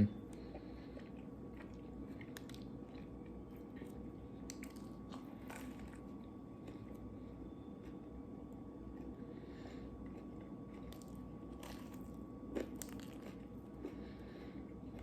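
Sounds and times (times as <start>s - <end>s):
person chewing: 0.3s - 8.2s, 8.9s - 15.0s
small food crunches: 0.4s - 7.0s, 10.1s - 14.2s.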